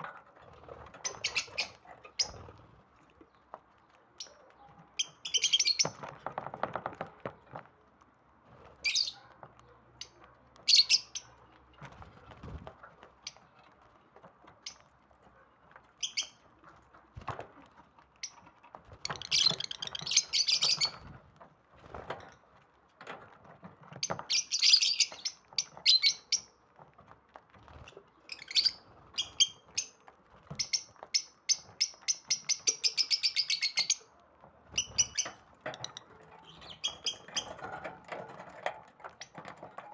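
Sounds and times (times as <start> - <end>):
lovebirds chirping: 0.1 - 6.2, 8.7 - 11.8, 15.9 - 17.1, 18.0 - 21.1, 24.0 - 26.6, 27.9 - 37.8.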